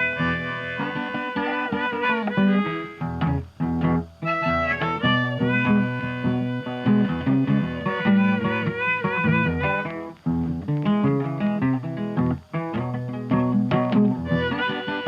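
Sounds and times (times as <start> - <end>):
wavering melody line: 0.0 - 10.1
plucked guitar music: 0.0 - 15.0.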